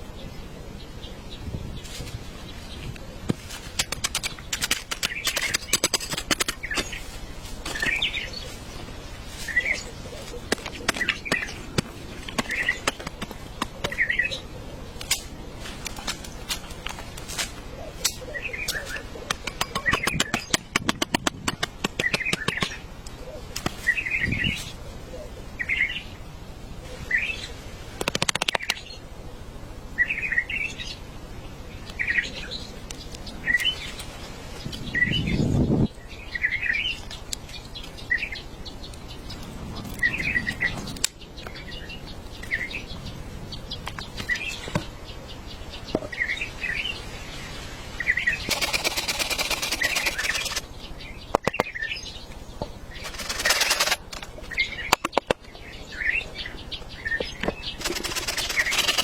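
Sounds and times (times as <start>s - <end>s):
rapid ticking or pattering: 3.8s - 6.7s, 19.3s - 22.7s, 48.4s - 50.6s, 53.0s - 54.4s, 57.8s - 59.0s
small bird chirping: 48.1s - 59.0s.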